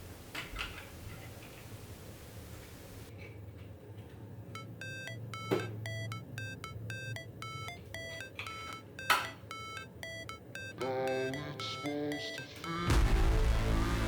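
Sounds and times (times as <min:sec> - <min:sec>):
sharp clicks: 0:04.6 - 0:12.8
melody of short high notes: 0:04.6 - 0:14.0.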